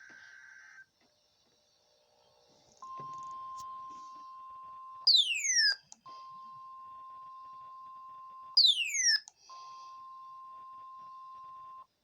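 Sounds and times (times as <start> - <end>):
falling whistle-like chirp: 5.0 - 6.3, 8.6 - 9.3.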